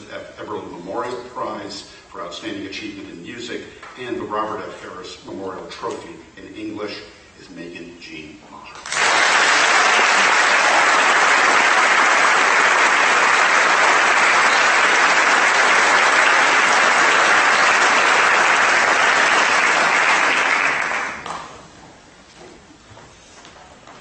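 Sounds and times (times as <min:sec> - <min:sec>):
audience applauding: 0:08.8 - 0:21.3.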